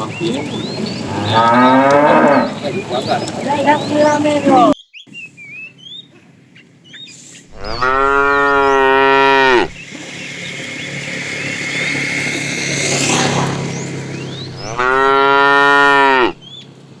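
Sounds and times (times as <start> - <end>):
birds chirping faintly: 0.0 - 16.8
cow mooing: 1.0 - 2.6, 7.5 - 9.8, 14.5 - 16.4
rushing noise: 7.5 - 15.2.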